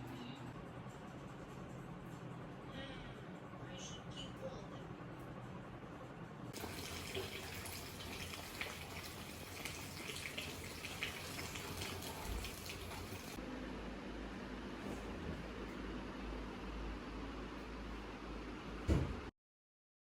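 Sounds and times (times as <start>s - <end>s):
tap water running into sink: 6.6s - 13.4s.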